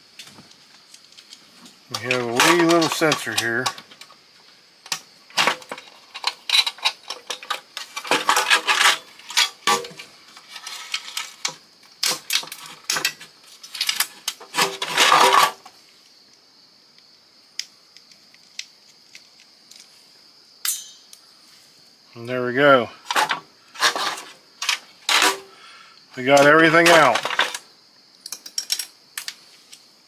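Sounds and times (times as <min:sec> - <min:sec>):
small parts clicking and clattering: 0:00.2 - 0:04.2, 0:04.8 - 0:15.8, 0:17.6 - 0:20.0, 0:23.1 - 0:25.5, 0:26.2 - 0:29.8.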